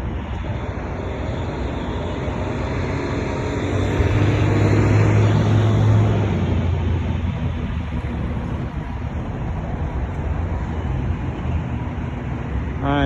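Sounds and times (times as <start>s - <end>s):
street traffic noise: 0.0s - 13.0s
vehicle engine hum passing: 0.0s - 13.0s.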